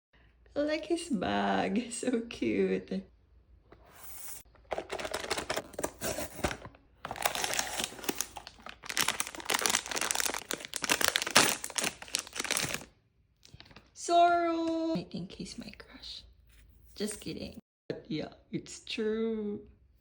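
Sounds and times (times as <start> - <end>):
plastic packaging crackling: 4.7 - 13.9.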